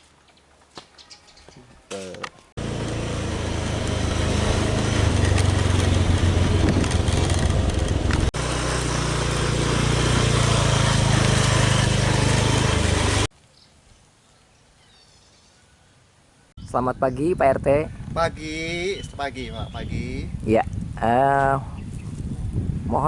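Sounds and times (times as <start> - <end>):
loud steady engine: 2.6 - 13.3.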